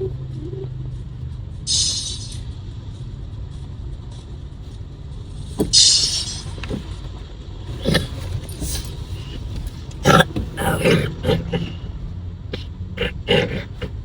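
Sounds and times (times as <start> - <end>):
car engine and road noise: 0.0 - 10.6.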